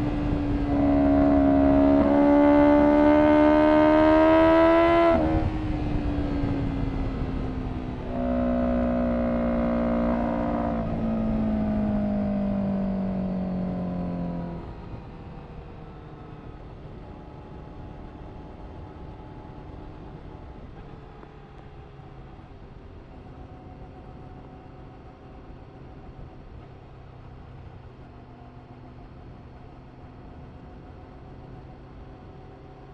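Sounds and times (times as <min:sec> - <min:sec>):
motorcycle engine revving: 0:00.0 - 0:14.9.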